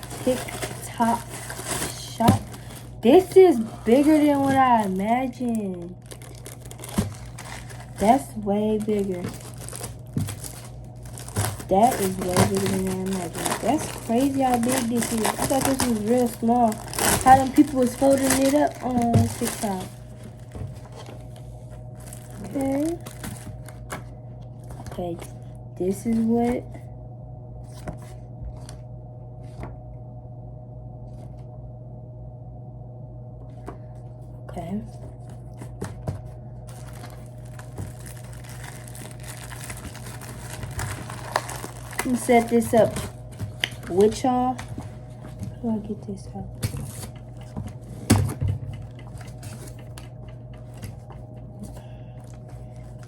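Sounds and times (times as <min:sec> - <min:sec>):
packaging handling knocks and rustles: 0:00.0 - 0:25.4, 0:35.0 - 0:45.7, 0:46.6 - 0:53.0
steady low hum: 0:00.0 - 0:53.0.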